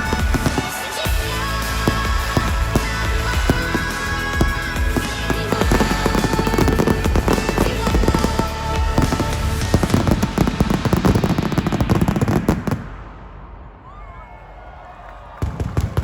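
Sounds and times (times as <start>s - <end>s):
music: 0.0s - 12.4s
fireworks banging and crackling: 0.0s - 14.0s, 15.3s - 16.0s.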